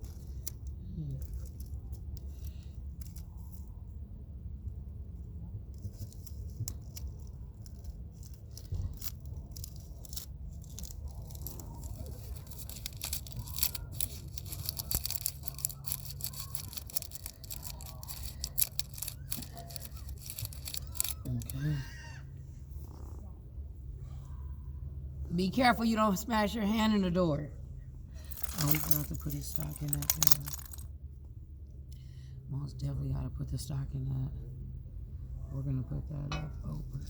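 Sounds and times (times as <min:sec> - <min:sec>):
decorations crackling and rustling: 0:00.0 - 0:04.0, 0:05.6 - 0:21.7, 0:28.2 - 0:30.9
steady low rumble: 0:22.2 - 0:37.0.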